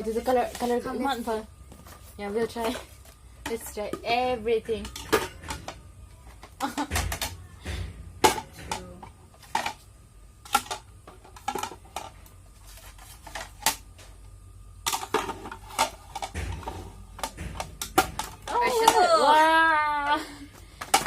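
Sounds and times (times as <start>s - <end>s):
kitchenware clicks and clinks: 4.8s - 5.8s.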